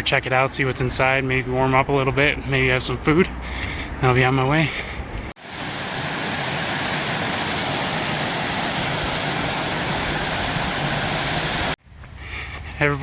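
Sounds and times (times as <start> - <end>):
waterfall roaring: 5.4 - 11.8.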